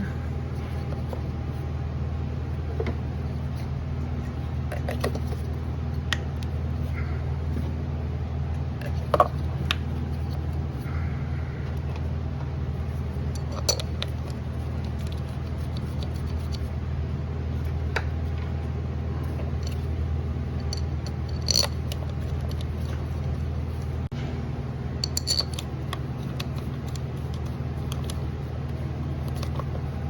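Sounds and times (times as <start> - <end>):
workshop low hum: 0.0 - 30.0.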